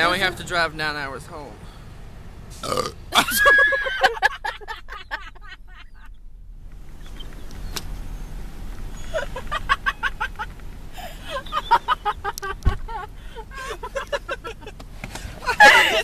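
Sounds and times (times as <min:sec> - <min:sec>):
low road rumble: 0:00.0 - 0:16.0
people laughing: 0:03.2 - 0:06.1, 0:09.1 - 0:14.8, 0:15.4 - 0:16.0.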